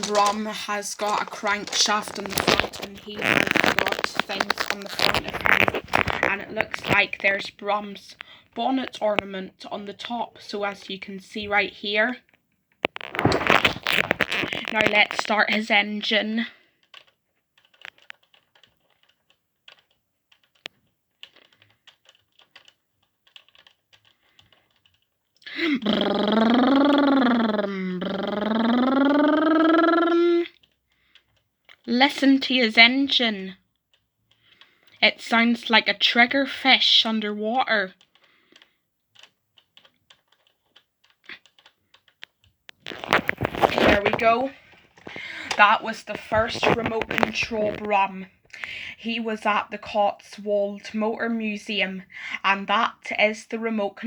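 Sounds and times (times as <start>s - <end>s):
toy car engine clicking: 0.0s - 13.0s, 14.3s - 42.9s
plastic clicks and taps: 16.8s - 25.5s
toy car electronic engine sound: 25.5s - 30.6s.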